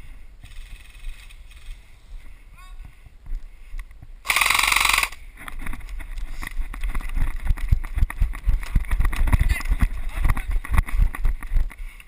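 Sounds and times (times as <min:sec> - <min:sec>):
rustling of movement: 0:00.0 - 0:12.0
airsoft gun full-auto rattle: 0:04.2 - 0:05.2.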